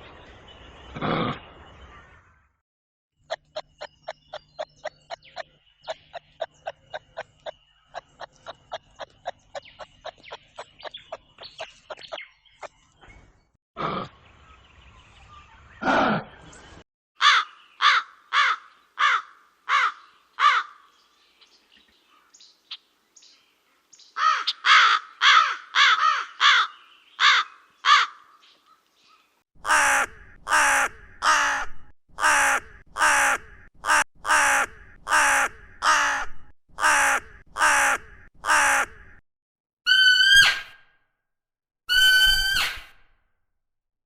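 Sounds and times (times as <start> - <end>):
crow cawing: 17.2 - 20.8, 24.2 - 28.4, 29.6 - 39.2.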